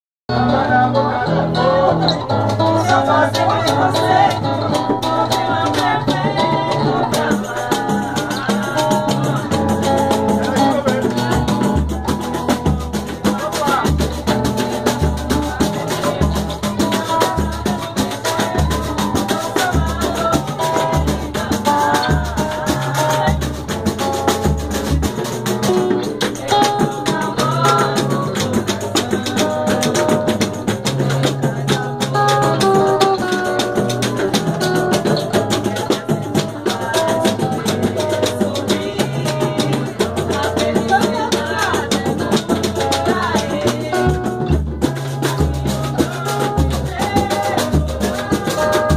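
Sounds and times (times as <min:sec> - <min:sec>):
shaker: 0:07.2 - 0:48.9.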